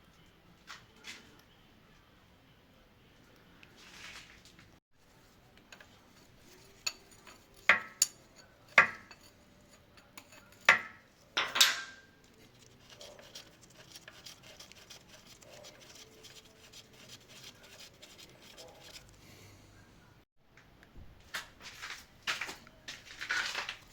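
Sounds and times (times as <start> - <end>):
faint handling noise: 3.2 - 23.9
metal tools clinking and clanking: 10.2 - 12.1.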